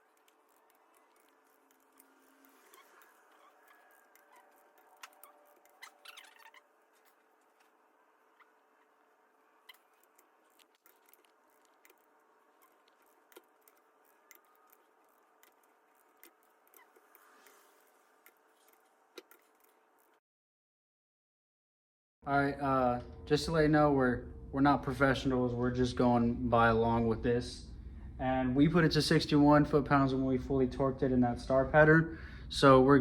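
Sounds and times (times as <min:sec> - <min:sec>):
faint clicks and ticks: 0:00.0 - 0:20.2.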